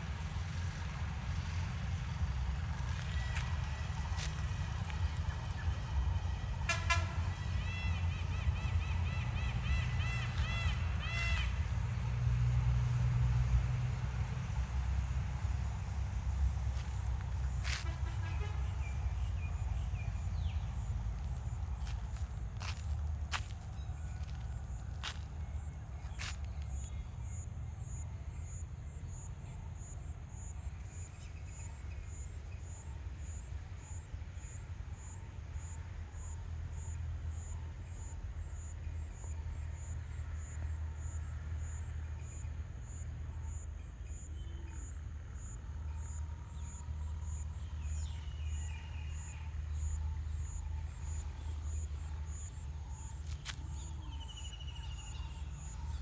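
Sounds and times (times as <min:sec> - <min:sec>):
continuous low rumble: 0:00.0 - 0:56.0
insects droning: 0:00.0 - 0:56.0
faint insect chirps: 0:14.5 - 0:56.0.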